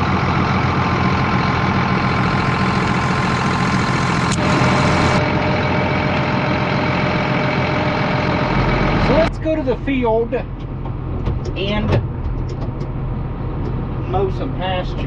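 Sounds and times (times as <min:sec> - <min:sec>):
tractor diesel engine idling: 0:00.0 - 0:10.8.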